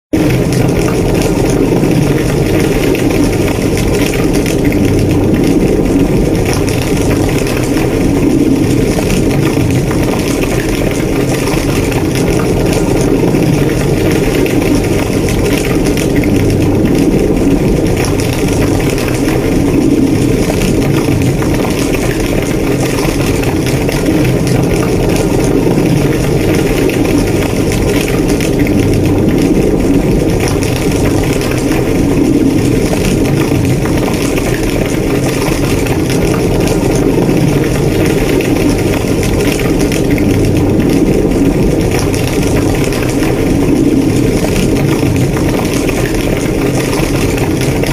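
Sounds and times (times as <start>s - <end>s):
flames crackling: 0.1s - 47.9s
large fire burning: 0.1s - 47.9s.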